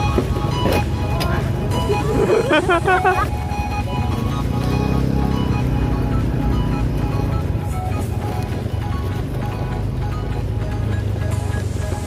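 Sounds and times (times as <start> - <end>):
music with short melodic notes: 0.0 - 12.0.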